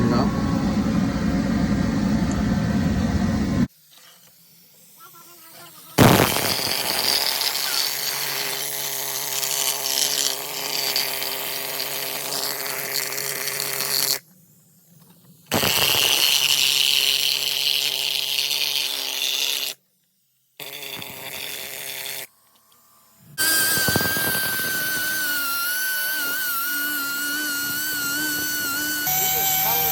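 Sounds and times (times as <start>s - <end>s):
power tool running: 4.8s - 14.2s, 15.5s - 19.8s, 20.6s - 29.9s.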